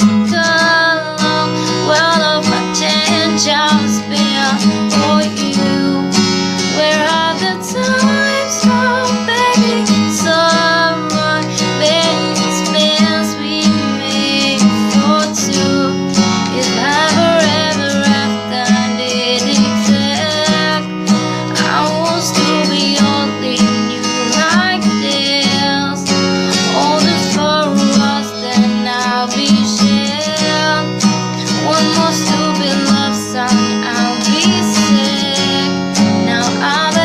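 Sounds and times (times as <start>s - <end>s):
strummed acoustic guitar: 0.0s - 37.0s
gliding melody line: 15.4s - 19.5s.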